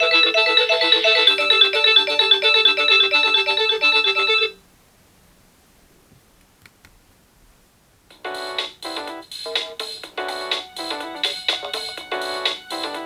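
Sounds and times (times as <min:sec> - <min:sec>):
phone ringtone melody: 0:00.0 - 0:04.6, 0:10.2 - 0:13.0
faint clicks: 0:06.1 - 0:07.0.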